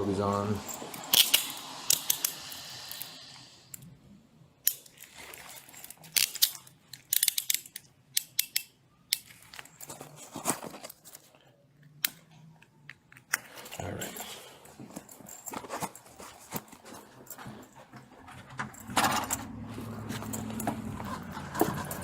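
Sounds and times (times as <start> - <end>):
steady hiss: 0.0 - 4.0
handling clicks and rustles: 4.6 - 22.0.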